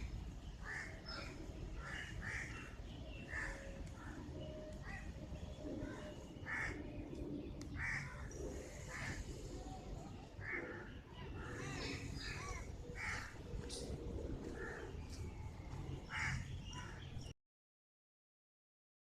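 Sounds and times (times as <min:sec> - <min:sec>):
birds chirping: 0:00.0 - 0:17.4.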